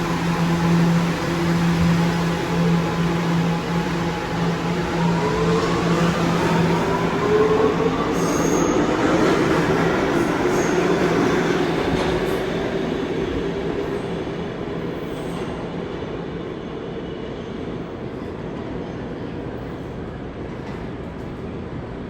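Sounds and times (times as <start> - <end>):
train wheels on rails: 0.0 - 15.8.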